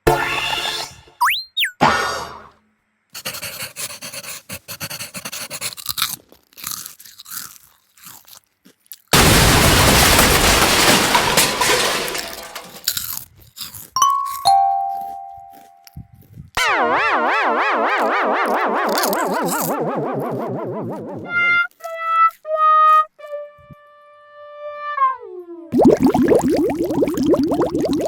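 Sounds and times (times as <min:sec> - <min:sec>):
rapid crunching: 0:04.5 - 0:08.4, 0:09.0 - 0:14.0
ringing chime tones: 0:14.0 - 0:15.9.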